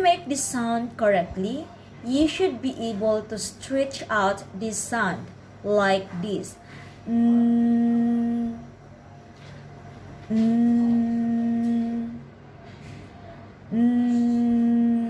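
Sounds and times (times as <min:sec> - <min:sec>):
woman humming: 0:07.0 - 0:09.0, 0:10.2 - 0:12.4, 0:13.6 - 0:15.0.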